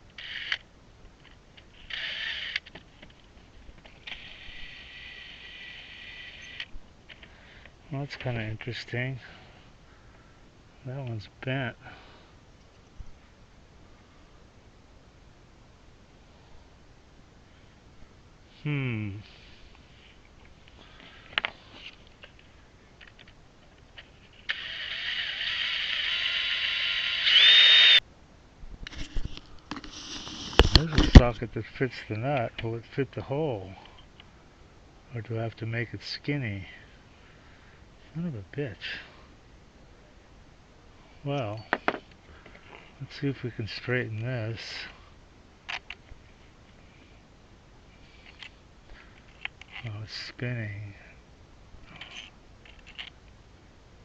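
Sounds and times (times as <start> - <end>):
cordless drill whine: 0.2 - 0.6, 1.8 - 2.7, 4.0 - 6.7, 24.4 - 28.0.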